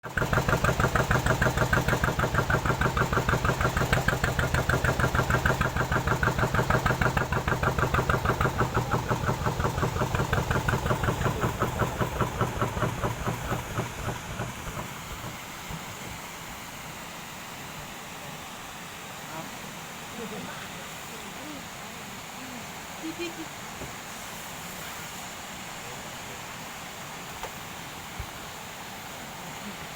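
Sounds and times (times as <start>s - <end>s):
small boat engine puttering: 0.0s - 16.4s.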